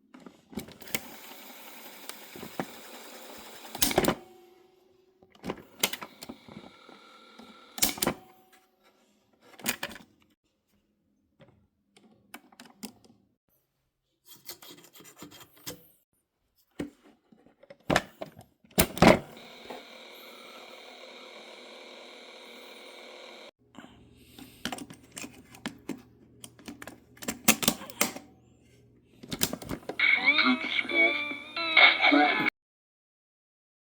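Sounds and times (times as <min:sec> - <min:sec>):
tape mechanism running: 0:00.8 - 0:04.2, 0:18.8 - 0:23.5
clicks and scraping from handling: 0:24.4 - 0:28.3.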